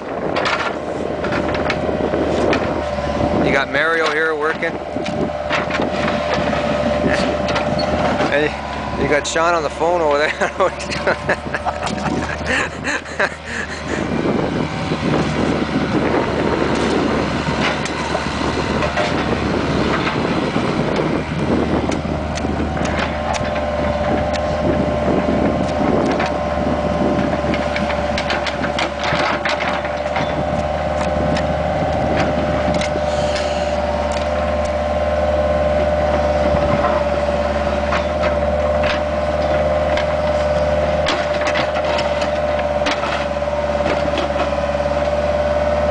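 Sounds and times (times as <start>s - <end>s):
clanks and scrapes on asphalt: 0.0s - 13.4s, 21.9s - 24.6s, 27.4s - 34.8s, 35.8s - 45.2s
excavator diesel engine running: 0.0s - 45.9s
steady whine: 0.0s - 45.9s.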